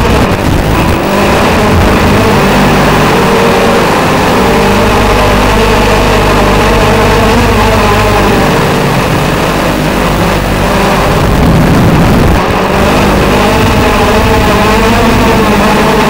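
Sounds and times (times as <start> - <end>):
drone propellers buzzing: 0.0 - 16.0.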